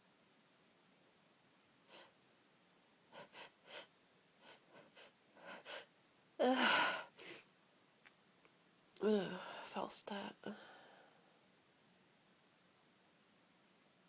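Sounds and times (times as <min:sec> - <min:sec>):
sharp gasping breaths: 0:03.2 - 0:07.4.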